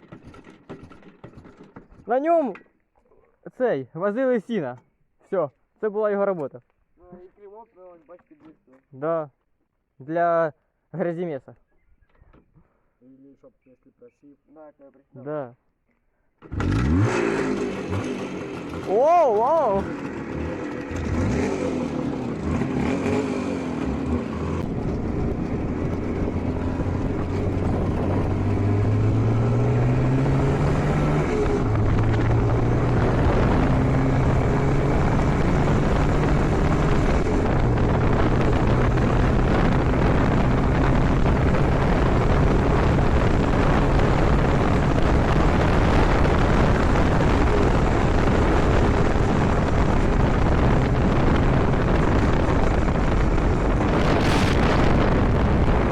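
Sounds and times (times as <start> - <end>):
motorcycle engine accelerating: 0.0 - 2.1, 16.4 - 55.9.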